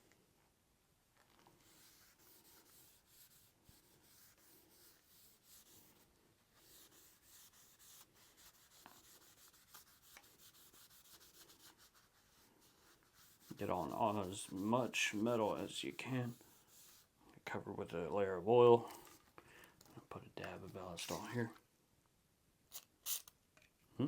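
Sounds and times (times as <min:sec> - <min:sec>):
cloth rubbing on steel: 0:01.6 - 0:17.1.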